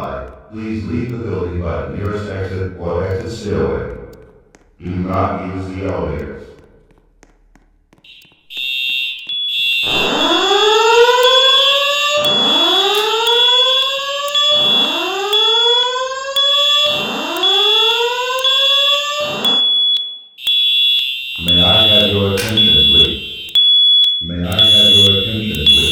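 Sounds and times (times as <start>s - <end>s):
spoken messages: 0.0s - 6.8s, 21.4s - 23.5s, 24.2s - 25.9s
fire alarm steady high tone: 8.1s - 25.9s
alarm whoop tone rising sweep: 9.5s - 19.7s.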